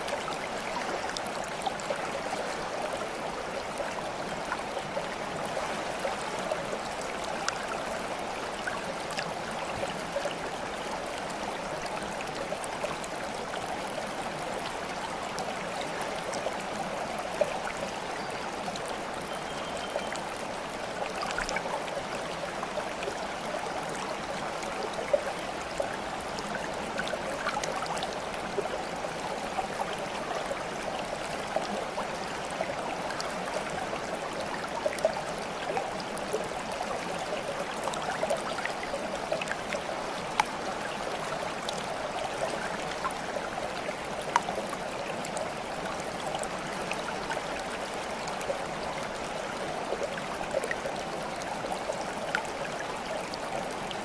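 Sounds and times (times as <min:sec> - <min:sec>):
stream water babbling: 0:00.0 - 0:54.0
water droplet ticks: 0:44.3 - 0:44.5.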